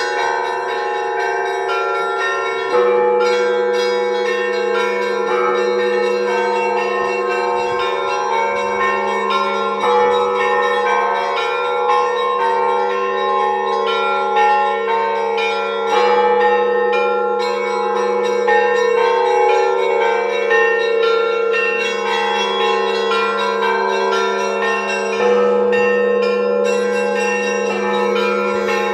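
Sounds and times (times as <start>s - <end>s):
hum of deep bells: 0.0s - 28.9s
small high bells striking: 21.8s - 28.9s.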